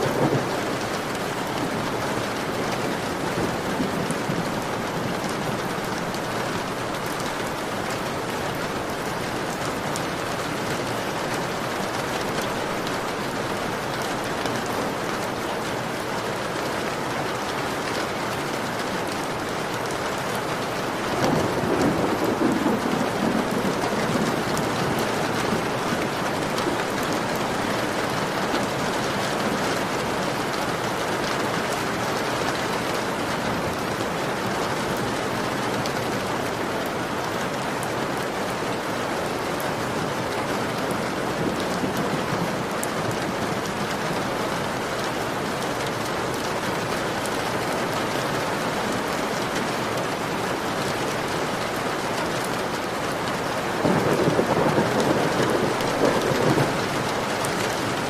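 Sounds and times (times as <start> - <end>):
thunder rumble: 0.0 - 5.7, 21.2 - 28.4, 53.8 - 58.0
heavy rain on a window: 0.0 - 58.0.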